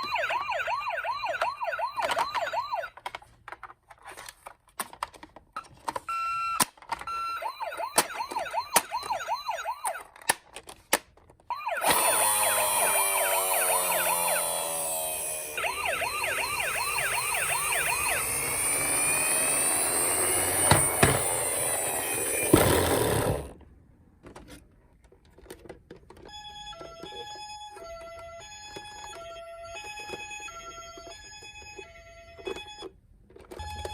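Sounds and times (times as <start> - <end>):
toy electronic sirens wailing: 0.0 - 3.0, 6.1 - 10.2, 11.5 - 23.4, 26.2 - 33.0.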